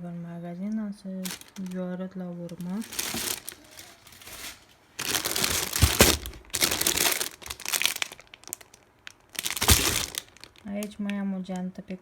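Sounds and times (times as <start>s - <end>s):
packaging crinkling and rustling: 1.2s - 1.8s, 2.4s - 11.1s.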